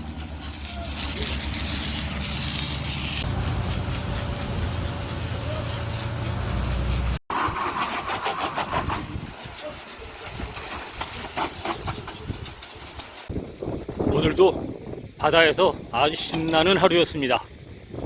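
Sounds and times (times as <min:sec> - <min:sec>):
engine running steadily: 0:00.0 - 0:07.2
hissing spray: 0:00.0 - 0:13.7.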